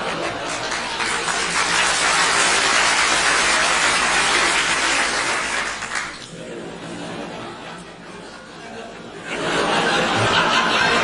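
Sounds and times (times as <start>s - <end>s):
audience applauding: 0.0s - 6.3s.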